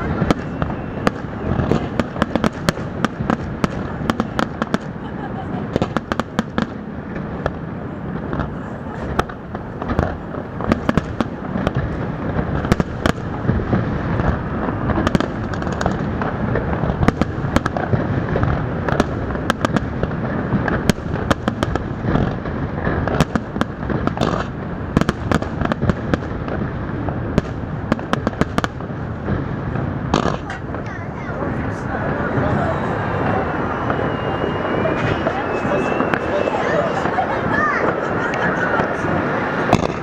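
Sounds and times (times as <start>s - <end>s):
continuous rumble: 0.0s - 40.0s
fireworks bangs: 0.0s - 40.0s.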